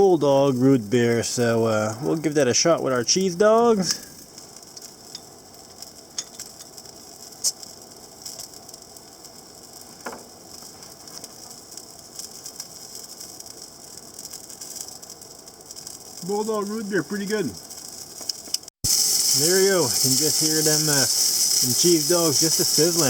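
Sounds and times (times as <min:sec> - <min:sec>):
sausages sizzling in a frying pan: 0:00.0 - 0:23.0.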